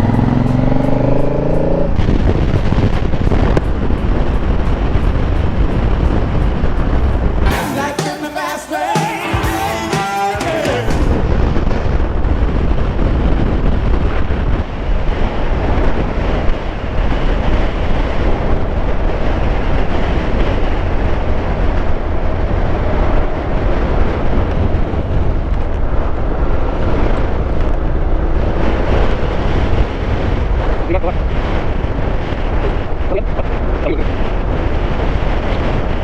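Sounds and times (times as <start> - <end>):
motorcycle engine running: 0.0 - 7.6
wind rushing over microphone: 0.0 - 7.6, 10.7 - 36.0.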